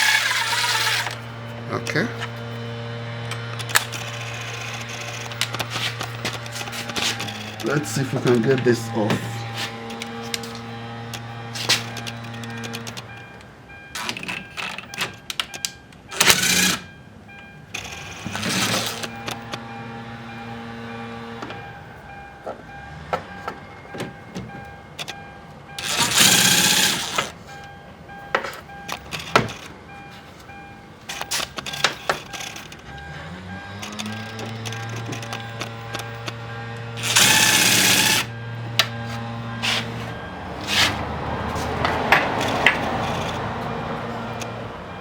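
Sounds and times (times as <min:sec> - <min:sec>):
ratchet wrench rasping: 0:00.0 - 0:01.3, 0:16.1 - 0:16.9, 0:25.8 - 0:27.3, 0:33.8 - 0:38.4.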